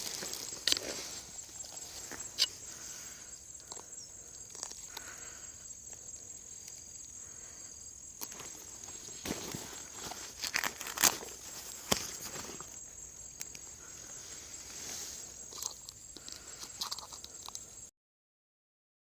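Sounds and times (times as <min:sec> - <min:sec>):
handling clicks and rustles: 0:00.0 - 0:02.8, 0:08.2 - 0:13.8
high-pitched insect drone: 0:00.0 - 0:17.9.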